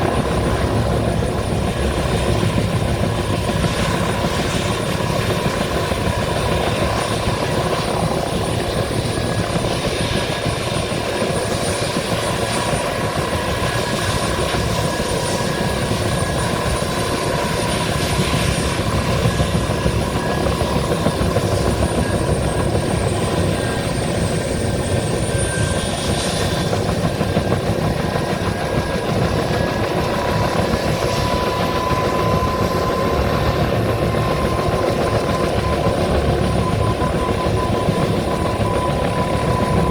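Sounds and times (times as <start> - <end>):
helicopter rotor beat: 0.0 - 39.9
turbine whine: 0.0 - 39.9.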